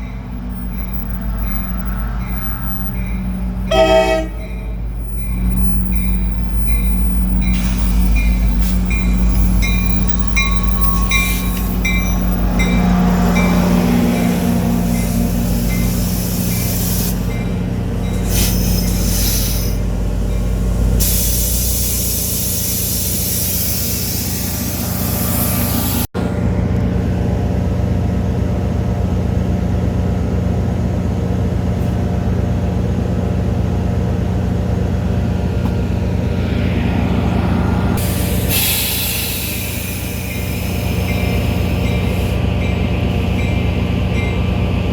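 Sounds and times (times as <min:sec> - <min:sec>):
diesel locomotive engine running: 0:00.0 - 0:44.9
loud air hiss: 0:14.9 - 0:17.4, 0:18.2 - 0:19.8, 0:21.0 - 0:26.1, 0:36.1 - 0:42.5.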